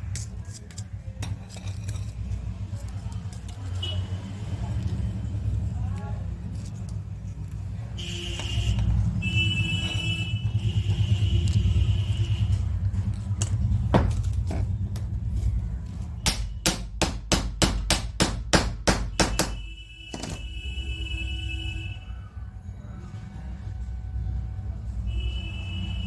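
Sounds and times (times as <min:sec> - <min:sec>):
rapid hammer strikes: 0:16.2 - 0:20.4.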